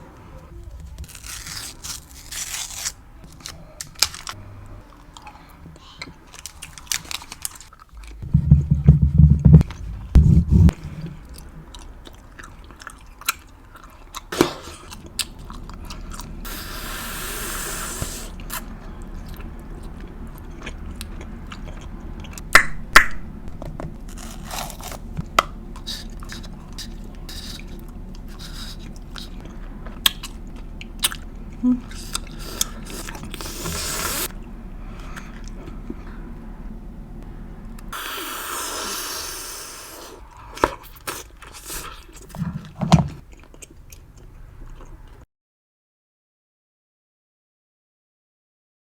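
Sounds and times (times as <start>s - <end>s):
low thumps: 8.0s - 10.9s
gum chewing: 8.9s - 36.3s
hiss: 16.5s - 18.4s, 33.4s - 34.3s, 37.9s - 40.2s.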